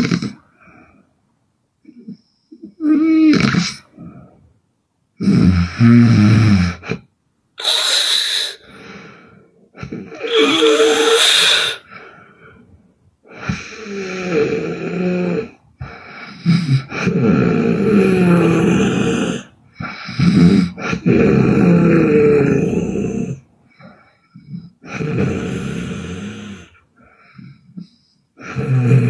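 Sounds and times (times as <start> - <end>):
woman snoring: 0.0 - 0.4, 5.2 - 7.0, 7.6 - 11.9, 13.3 - 23.4, 24.5 - 26.8, 28.4 - 29.0.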